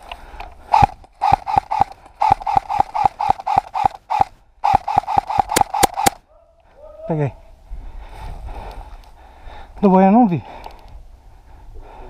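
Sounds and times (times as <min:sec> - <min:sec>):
airsoft rifle firing single shots: 0:00.8 - 0:06.2.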